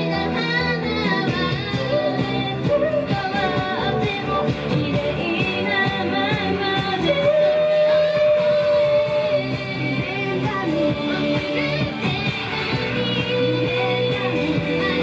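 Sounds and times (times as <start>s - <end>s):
guitar-driven backing music: 0.0s - 15.0s
young women singing: 0.0s - 15.0s.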